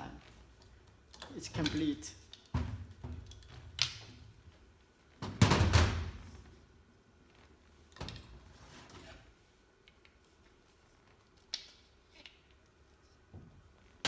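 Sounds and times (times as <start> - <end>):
pipe clunk and clatter: 1.5 - 3.8.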